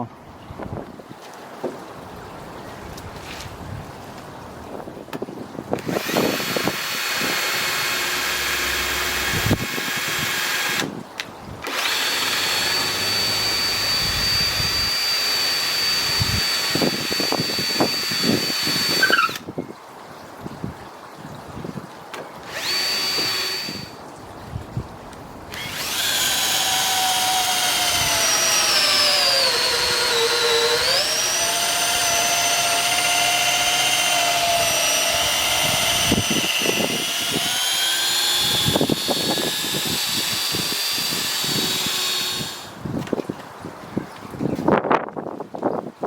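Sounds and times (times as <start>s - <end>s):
power drill running: 5.8s - 10.9s, 11.6s - 19.4s, 22.4s - 24.0s, 25.5s - 42.8s.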